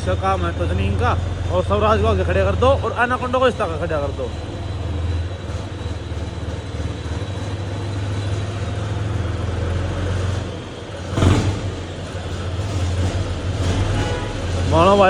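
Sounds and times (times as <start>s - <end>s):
tractor engine droning: 0.0s - 15.0s.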